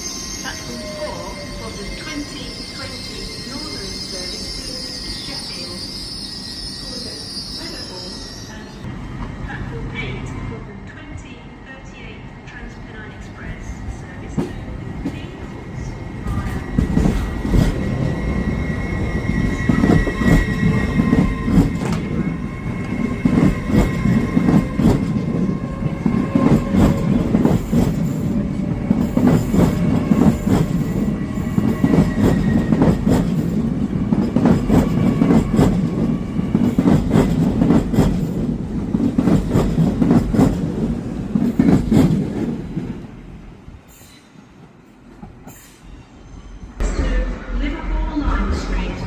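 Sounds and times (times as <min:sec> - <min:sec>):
faint high wheel squeal: 0:00.0 - 0:08.8
train rumble: 0:07.1 - 0:45.7, 0:46.8 - 0:49.0.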